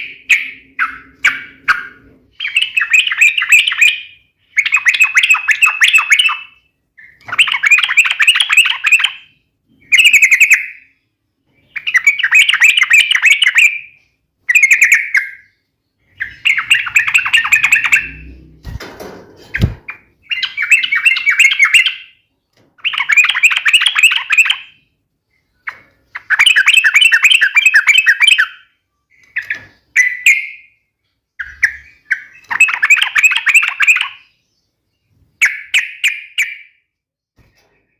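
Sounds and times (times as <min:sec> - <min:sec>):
bird rapid trilling song: 0:00.0 - 0:18.8, 0:19.4 - 0:36.9.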